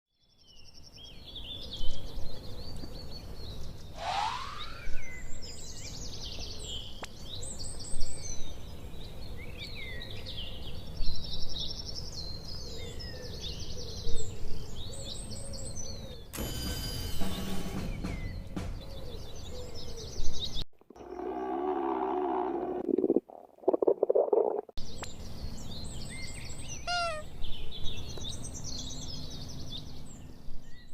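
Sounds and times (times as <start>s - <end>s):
rising sweep: 4.0s - 5.5s
birds chirping: 24.4s - 30.9s.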